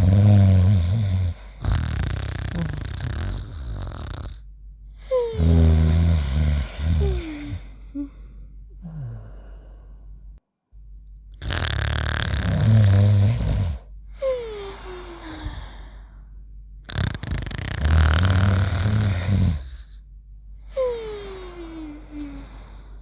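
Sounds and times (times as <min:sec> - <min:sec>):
cartoon snoring: 0:00.0 - 0:04.4, 0:05.3 - 0:07.6, 0:11.4 - 0:13.9, 0:16.8 - 0:19.9.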